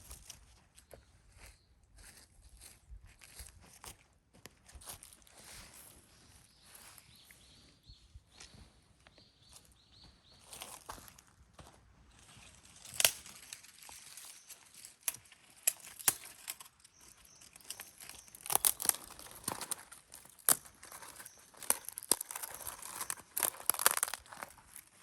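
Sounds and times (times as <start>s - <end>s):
camping gear crinkling and rustling: 12.1s - 25.0s.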